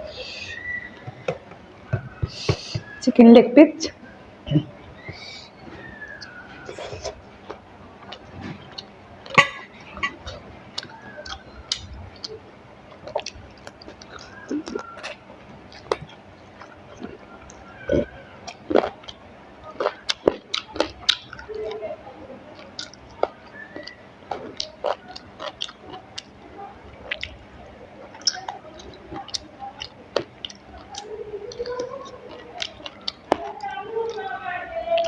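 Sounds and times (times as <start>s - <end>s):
wet mouth clicks: 3.8s - 19.2s, 22.6s - 26.4s, 28.1s - 34.3s
close chewing: 3.9s - 35.0s.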